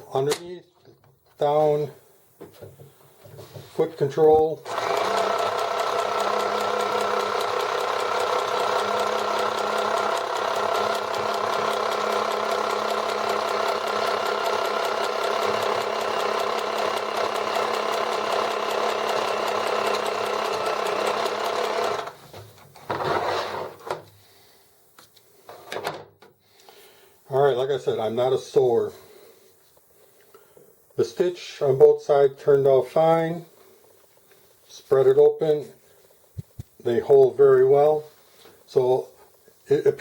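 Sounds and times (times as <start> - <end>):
sewing machine stitching: 4.6 - 22.2.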